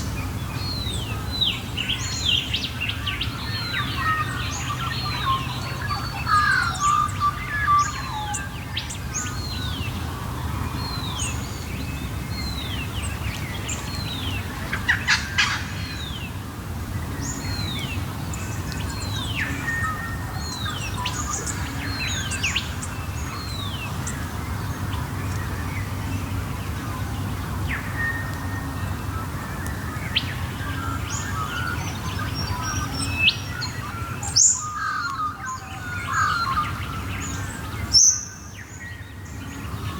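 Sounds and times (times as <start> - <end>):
birds chirping and calling: 2.9 - 10.0, 12.4 - 16.2, 30.1 - 38.4.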